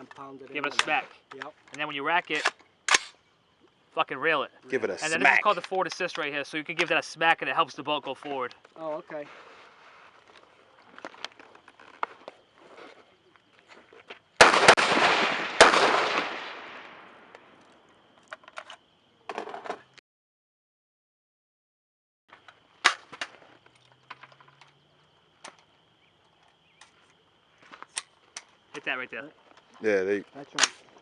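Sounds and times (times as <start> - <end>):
rifle shots echoing: 14.4 - 17.3.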